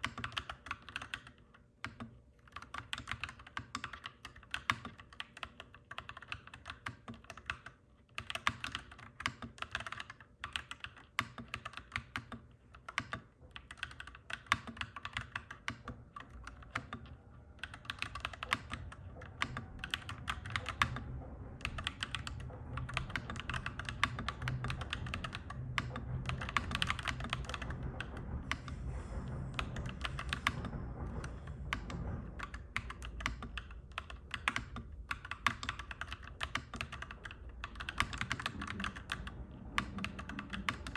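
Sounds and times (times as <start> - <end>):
mechanical keyboard typing: 0.0 - 28.7, 29.6 - 40.9
low background rumble: 13.4 - 40.9.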